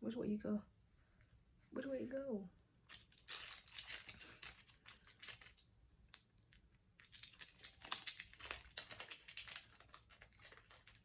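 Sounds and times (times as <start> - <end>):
light plastic clicks and rustles: 2.9 - 11.0.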